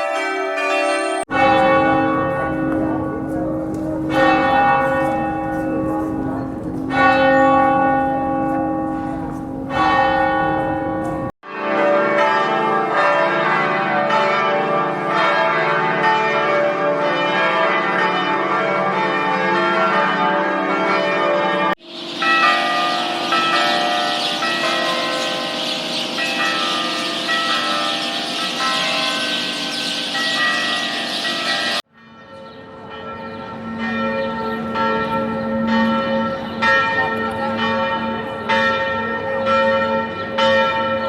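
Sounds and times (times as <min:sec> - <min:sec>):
bells pealing together: 0:00.0 - 0:11.3, 0:21.8 - 0:41.0
large bell tolling slowly: 0:00.0 - 0:21.0, 0:21.8 - 0:41.0.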